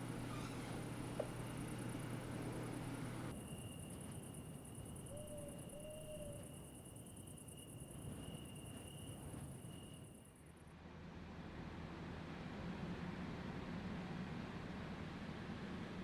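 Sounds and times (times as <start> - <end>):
crickets trilling: 3.3 - 10.4.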